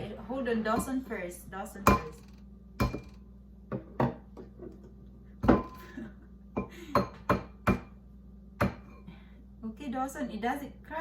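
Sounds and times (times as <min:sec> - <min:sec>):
egg tapping against hard edge: 0:01.9 - 0:03.2.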